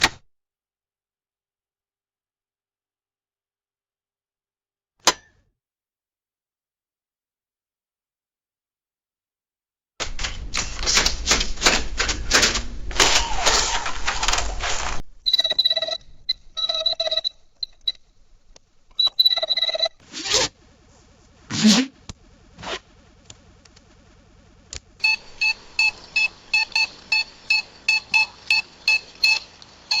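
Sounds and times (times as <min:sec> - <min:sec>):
electronic beeps: 0:15.2 - 0:18.0, 0:18.9 - 0:20.0, 0:25.0 - 0:30.0
clicks: 0:24.7 - 0:30.0.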